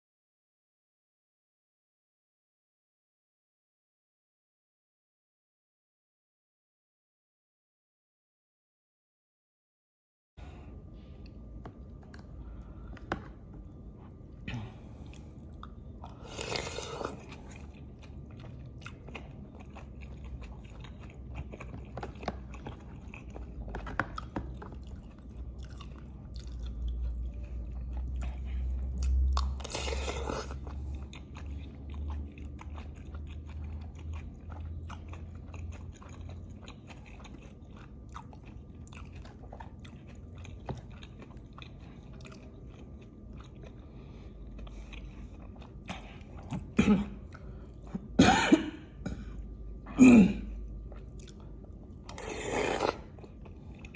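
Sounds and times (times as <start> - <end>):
person chewing food: 11.0 - 48.2, 48.8 - 53.9.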